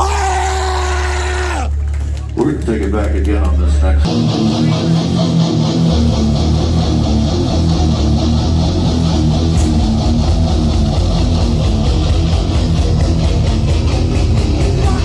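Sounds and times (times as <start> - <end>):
bass guitar: 0.0 - 15.0
electric guitar chords: 3.4 - 15.0.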